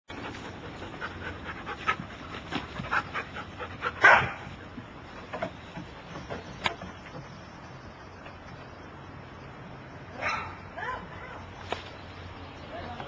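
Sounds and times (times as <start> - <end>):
dogs playing: 0.1 - 9.0.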